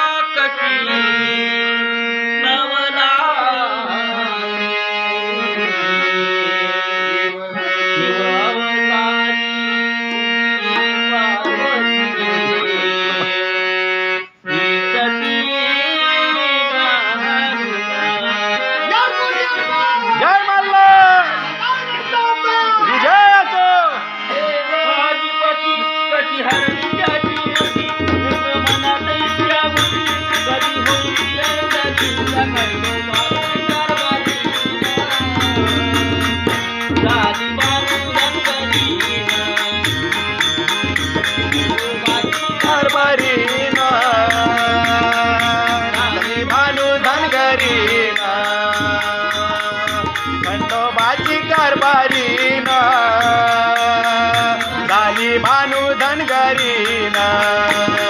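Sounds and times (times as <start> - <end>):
steady drum rhythm: 26.5 - 58.0.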